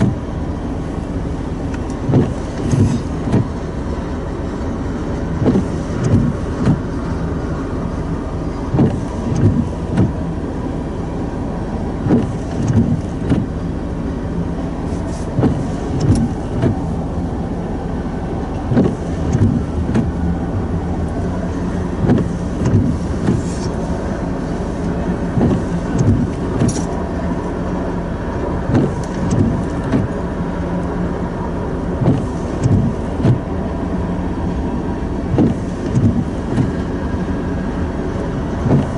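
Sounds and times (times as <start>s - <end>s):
freight train rumble: 0.0s - 38.9s.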